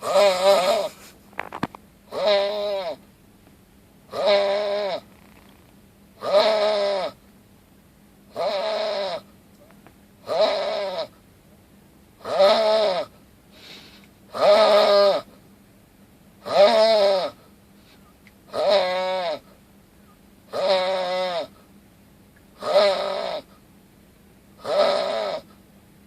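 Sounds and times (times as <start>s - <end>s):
high-pitched snoring: 0.0s - 1.0s, 20.5s - 21.5s, 22.6s - 23.5s, 24.6s - 25.5s
quiet breaths: 13.5s - 14.2s, 17.4s - 18.3s.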